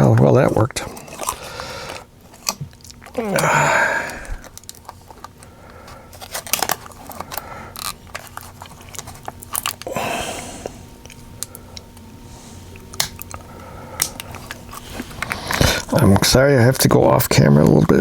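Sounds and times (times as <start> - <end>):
crinkling: 0.2 - 3.5, 4.1 - 10.0, 11.0 - 18.0.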